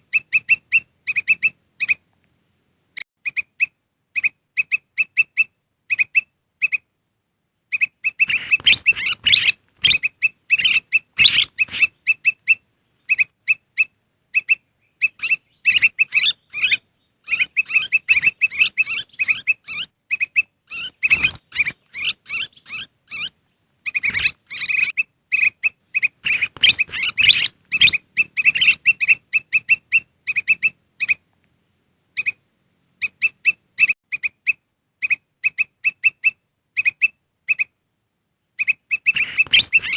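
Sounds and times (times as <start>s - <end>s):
bird chirping and chattering: 0.1s - 2.0s, 7.7s - 31.2s, 38.6s - 39.9s.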